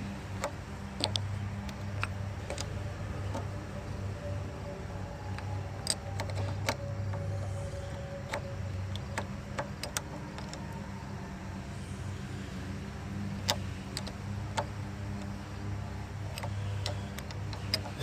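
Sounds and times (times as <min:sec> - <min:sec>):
steady low hum: 0:00.0 - 0:18.0
metallic clicks of hand tools: 0:00.4 - 0:02.7.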